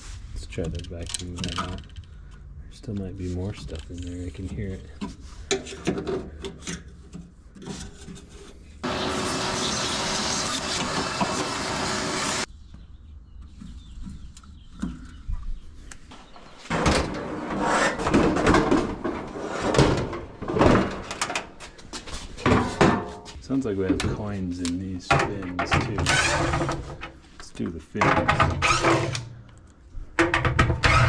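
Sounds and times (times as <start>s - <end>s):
vacuum cleaner running: 8.8s - 12.5s.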